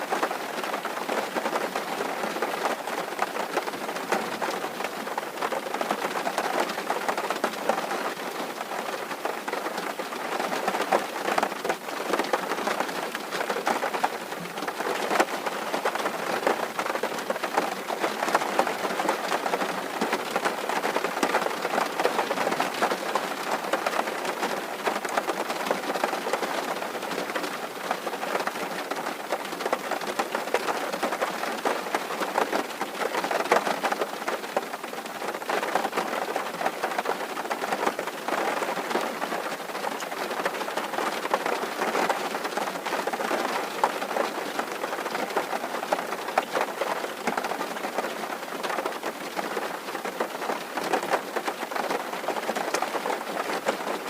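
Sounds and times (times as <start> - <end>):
heavy rain on a tin roof: 0.0 - 54.0.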